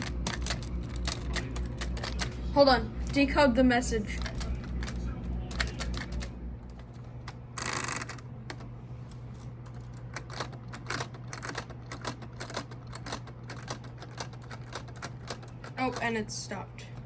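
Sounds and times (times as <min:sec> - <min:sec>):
plastic typewriter keys clacking: 0:00.0 - 0:02.4, 0:04.1 - 0:08.7, 0:09.6 - 0:16.2.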